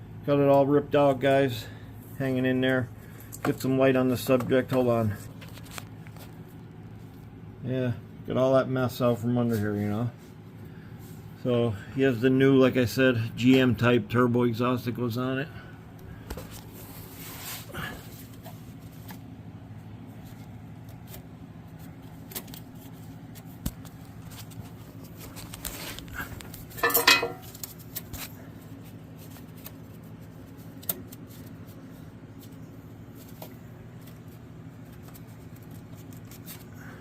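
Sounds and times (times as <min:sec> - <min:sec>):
metal tools clinking: 0:26.8 - 0:27.5
metal parts clattering: 0:26.8 - 0:27.6.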